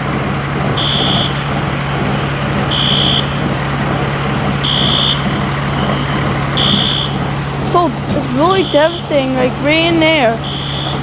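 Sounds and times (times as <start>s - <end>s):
steady hum and rushing noise: 0.0s - 11.0s
fire alarm beeping: 0.8s - 1.5s, 2.7s - 3.4s, 4.6s - 7.3s, 8.4s - 9.2s, 10.4s - 11.0s.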